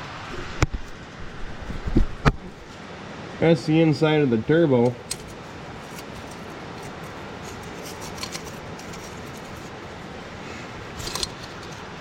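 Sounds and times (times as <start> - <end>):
steady background hiss: 0.0 - 12.0
metal parts clicking and rattling: 5.0 - 10.0, 10.7 - 12.0.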